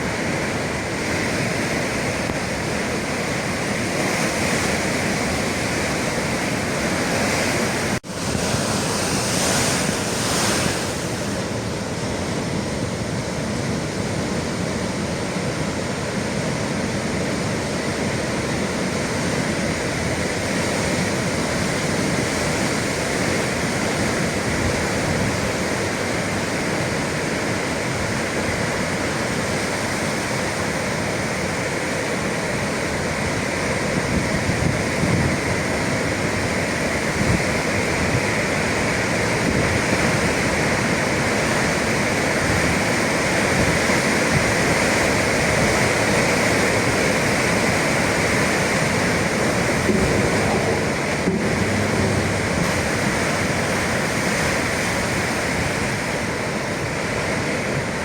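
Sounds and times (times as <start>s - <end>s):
sea waves and surf: 0.0s - 58.0s.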